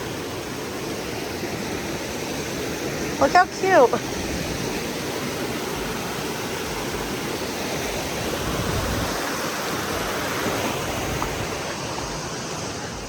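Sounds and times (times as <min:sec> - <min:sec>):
creek rushing over rocks: 0:00.0 - 0:13.0.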